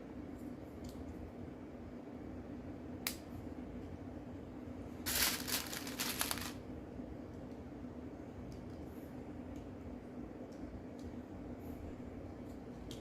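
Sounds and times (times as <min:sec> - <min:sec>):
plastic bricks rattling: 0:05.1 - 0:06.6.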